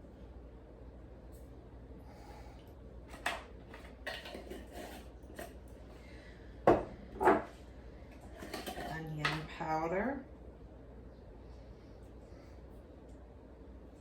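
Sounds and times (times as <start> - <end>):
containers knocking on counter: 6.7 - 7.5.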